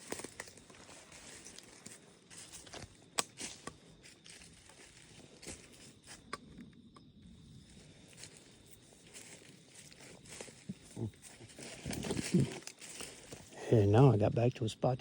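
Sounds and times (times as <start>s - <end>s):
footsteps crunching through dry leaves: 0.0s - 6.2s, 7.8s - 13.6s.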